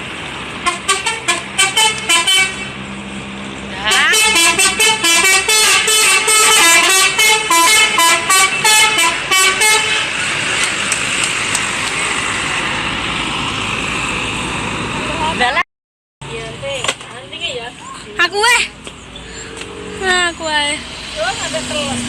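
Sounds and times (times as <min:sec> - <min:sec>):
loud rush of noise: 0:09.8 - 0:15.3.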